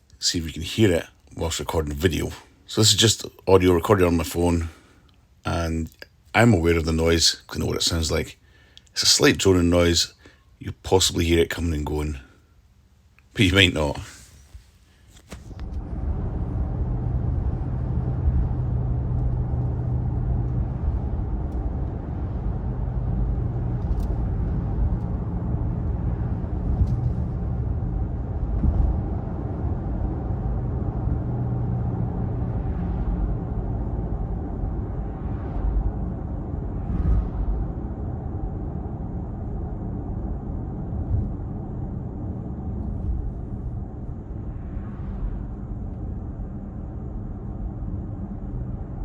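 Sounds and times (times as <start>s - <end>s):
low droning hum: 11.2s - 49.0s
road and wind noise in car: 15.2s - 49.0s.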